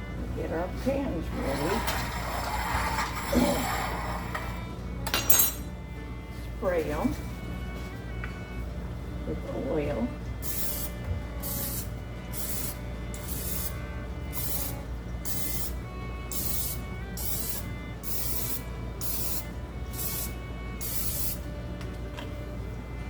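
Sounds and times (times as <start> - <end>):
cooking oil spray squirts: 10.4 - 21.5.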